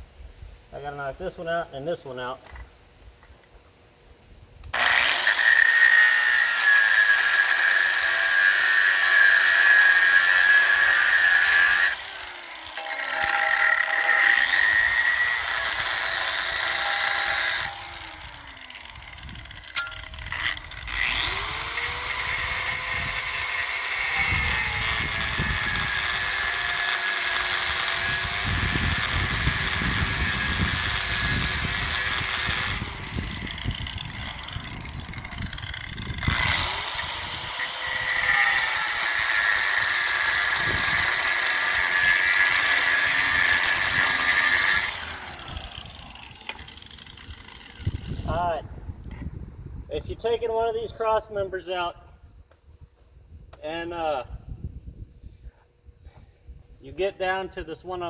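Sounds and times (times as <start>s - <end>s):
cutoff tool grinding steel: 4.6s - 49.3s
cutoff tool whining: 4.6s - 51.7s.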